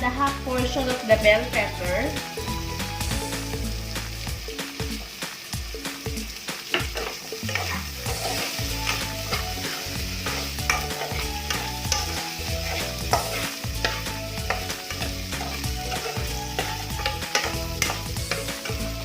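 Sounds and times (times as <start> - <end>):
vegetables sizzling in oil: 0.0 - 19.0
utensil scraping a pan: 6.7 - 19.0.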